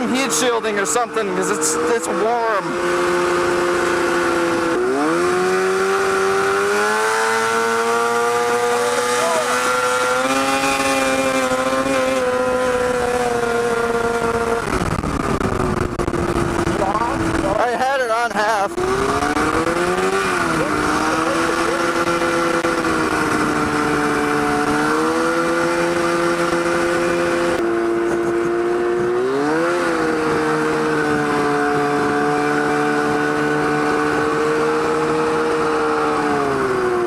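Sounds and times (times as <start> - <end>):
two-stroke engine high revs: 0.0 - 37.0.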